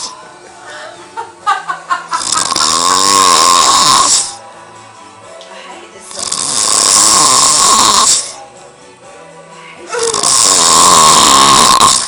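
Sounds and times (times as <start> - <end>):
man snoring loudly: 2.2 - 4.4, 6.1 - 8.4, 10.0 - 12.0.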